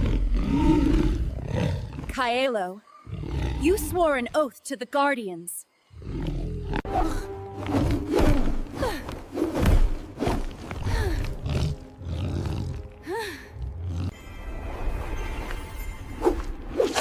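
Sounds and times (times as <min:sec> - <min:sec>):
beast roaring and growling: 0:00.0 - 0:02.1
dramatic background music: 0:06.8 - 0:17.0.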